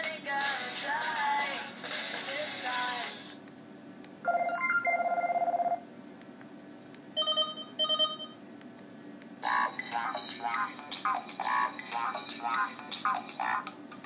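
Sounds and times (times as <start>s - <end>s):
buzzy electronic ringtone trill: 4.3s - 5.8s
electronic ringtone tune: 4.3s - 5.8s, 7.2s - 8.4s
short phone beeps: 7.2s - 8.4s.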